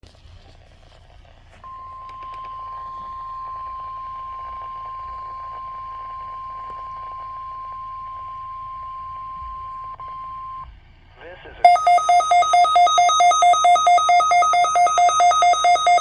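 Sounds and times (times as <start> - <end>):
steady high-pitched alarm beep: 11.6 - 16.0.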